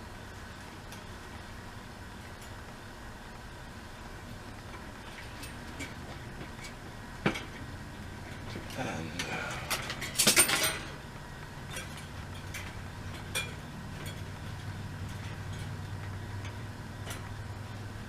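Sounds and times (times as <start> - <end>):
steady low hum: 0.0 - 18.0
metal clinking and rattling: 8.3 - 11.0, 11.7 - 17.4.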